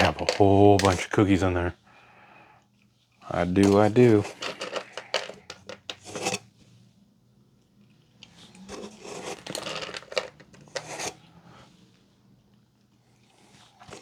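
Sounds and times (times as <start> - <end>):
treat packet rustling: 0.0 - 1.6, 3.3 - 5.6.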